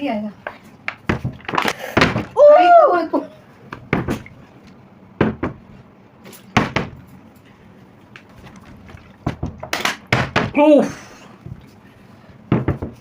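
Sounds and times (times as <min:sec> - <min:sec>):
plastic bottle landing thuds: 0:01.0 - 0:02.4.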